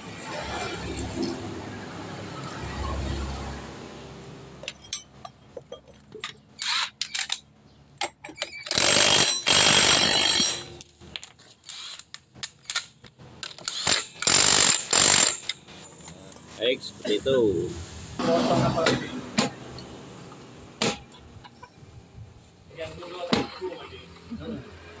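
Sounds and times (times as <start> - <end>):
tools clicking and clattering: 4.6 - 16.5
air tool bursts: 8.7 - 10.8, 11.7 - 12.1, 13.5 - 15.6.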